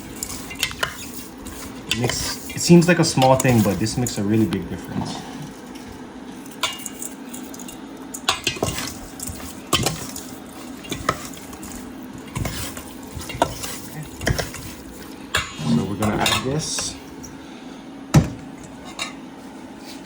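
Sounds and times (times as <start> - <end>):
utensil clinking against bowl: 6.5 - 17.0.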